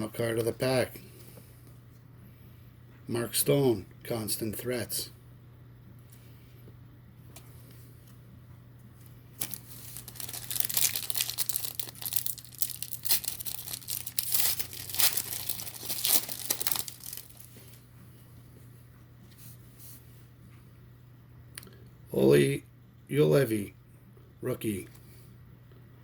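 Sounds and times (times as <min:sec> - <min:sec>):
foil wrapper tearing and crinkling: 0:09.4 - 0:17.8.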